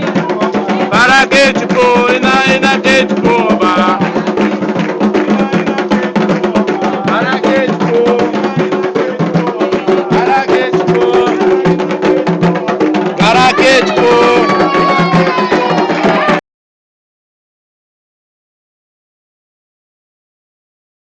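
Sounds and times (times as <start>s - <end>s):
drums in fast rhythm: 0.0s - 16.4s
sharp clacking percussion: 0.0s - 16.4s
voices singing a chant: 0.0s - 16.4s.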